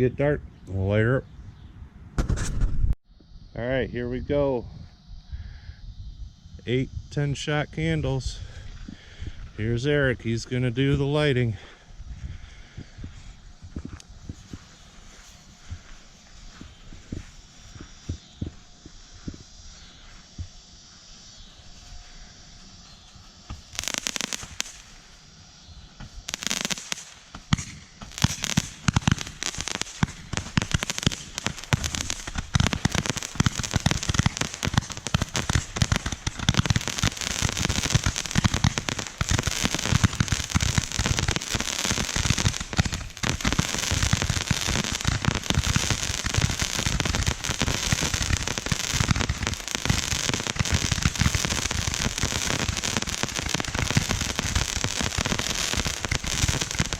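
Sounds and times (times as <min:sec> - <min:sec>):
fireworks firing: 0:13.3 - 0:56.9.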